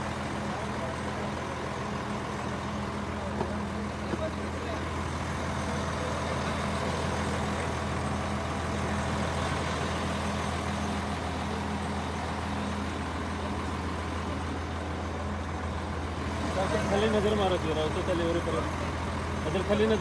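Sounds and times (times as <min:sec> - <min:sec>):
vehicle engine running: 0:00.0 - 0:20.0.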